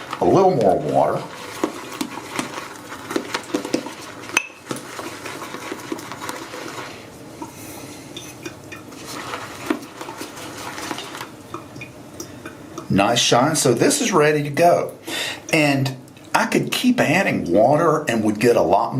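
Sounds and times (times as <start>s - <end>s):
shaving brush swishing in bowl: 0.0s - 11.4s.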